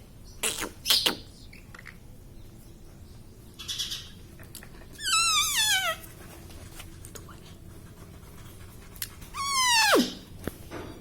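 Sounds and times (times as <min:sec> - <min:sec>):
parakeet squawk: 0:09.4 - 0:10.2
parakeet wavering whistle: 0:09.4 - 0:10.2.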